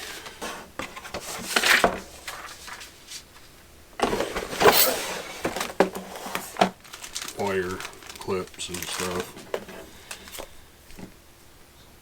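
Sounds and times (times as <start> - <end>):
plastic bags rustling: 0.0 - 11.3.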